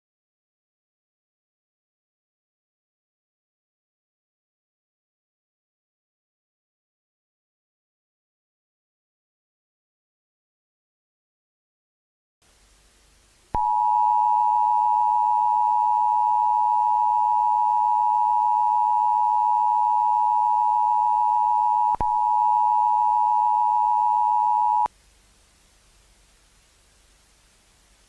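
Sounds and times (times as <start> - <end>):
two-tone alarm: 13.6 - 24.9.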